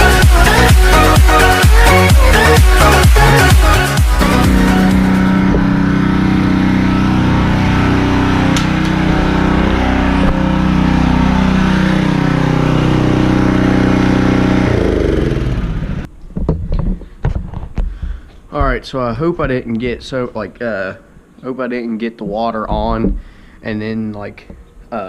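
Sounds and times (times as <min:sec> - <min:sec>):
pressure washer engine running: 0:02.3 - 0:16.1.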